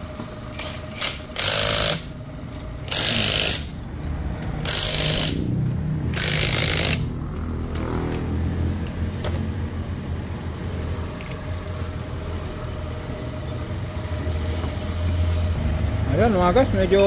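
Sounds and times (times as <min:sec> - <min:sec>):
engine idling: 0:00.0 - 0:17.0
impact wrench bursts: 0:00.4 - 0:08.3.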